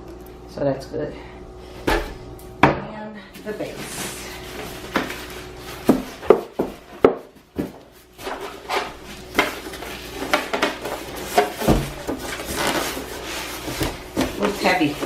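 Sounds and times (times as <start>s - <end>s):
handling parts and packaging: 4.5s - 15.0s.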